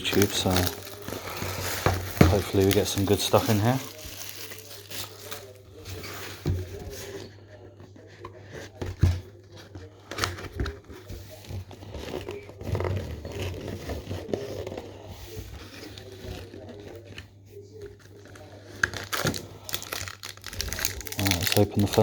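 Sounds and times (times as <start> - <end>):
plastic wrapping crinkling and tearing: 0.0 - 6.9, 18.0 - 22.0
cardboard box being handled: 0.0 - 7.3, 7.9 - 17.2.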